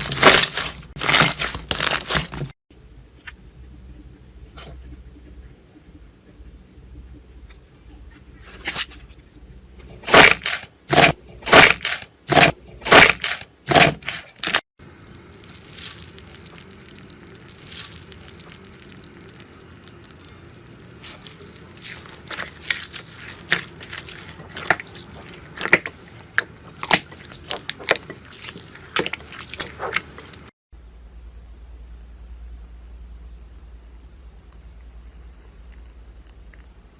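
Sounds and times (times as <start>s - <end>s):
slime crackling when squeezed: 0.0s - 2.5s, 15.0s - 30.5s
slime popping: 15.1s - 30.4s.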